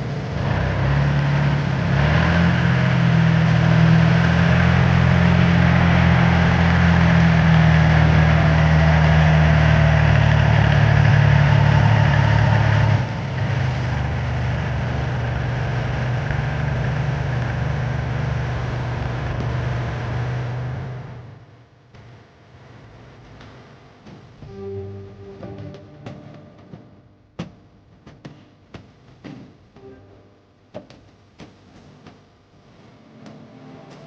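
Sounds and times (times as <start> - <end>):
sprayer engine running: 0.0 - 21.0.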